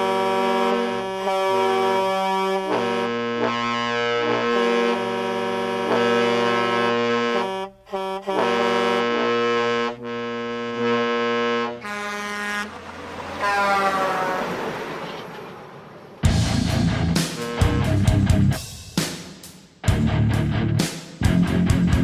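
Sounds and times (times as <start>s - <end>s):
truck air horn blasts: 0.0s - 14.7s, 17.2s - 18.0s.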